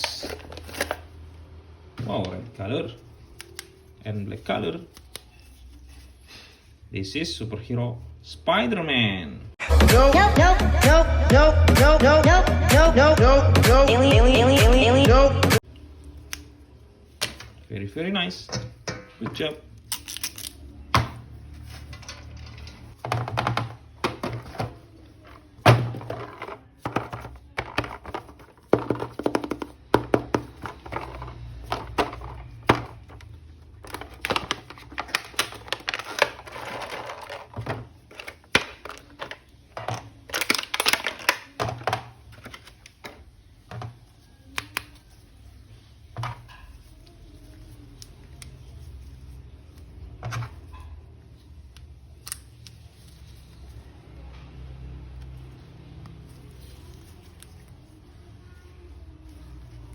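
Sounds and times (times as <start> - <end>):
plastic rattling and rustling: 21.0 - 44.0
plastic toys clicking and knocking: 21.9 - 43.9.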